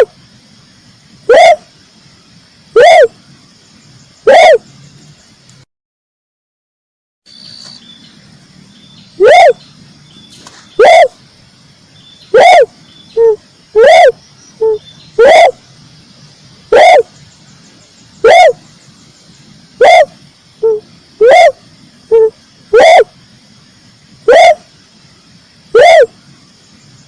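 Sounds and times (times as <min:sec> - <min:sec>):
dove cooing: 0:01.3 - 0:01.7, 0:02.8 - 0:03.1, 0:04.2 - 0:04.6, 0:09.2 - 0:09.6, 0:10.8 - 0:11.2, 0:12.3 - 0:15.6, 0:16.7 - 0:17.1, 0:18.2 - 0:18.6, 0:19.8 - 0:23.2, 0:24.2 - 0:24.7, 0:25.7 - 0:26.2.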